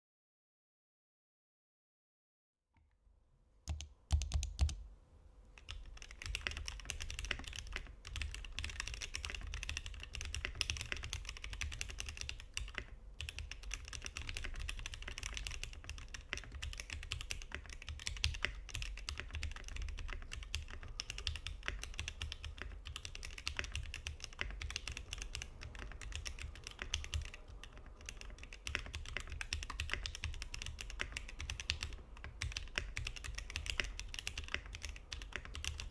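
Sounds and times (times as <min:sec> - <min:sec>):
mechanical keyboard typing: 0:03.7 - 0:04.9, 0:05.6 - 0:35.9.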